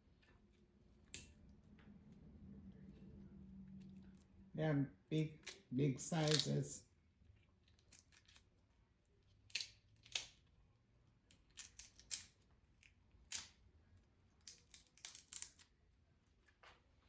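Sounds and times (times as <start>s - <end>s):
shrimp shells cracking: 6.2s - 6.6s, 9.4s - 10.4s, 11.3s - 12.4s, 14.4s - 15.7s.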